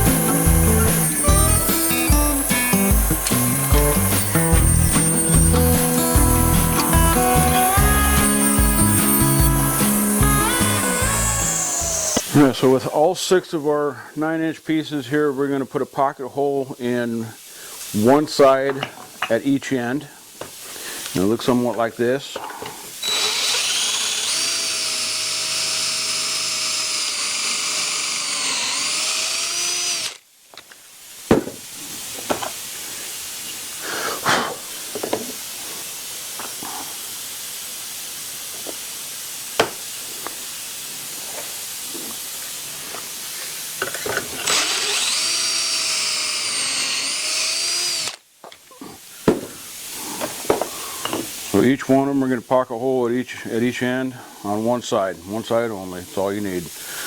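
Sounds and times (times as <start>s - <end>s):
power drill whining: 0.0s - 12.6s, 23.0s - 30.2s, 43.8s - 48.2s
board knocking and clattering: 31.3s - 32.6s, 49.3s - 49.6s, 50.2s - 51.3s.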